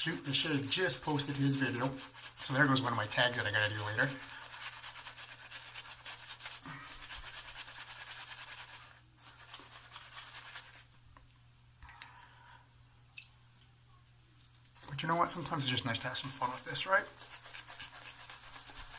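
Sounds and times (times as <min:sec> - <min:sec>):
shaving brush scrubbing stubble: 0:00.0 - 0:10.8, 0:14.8 - 0:18.9.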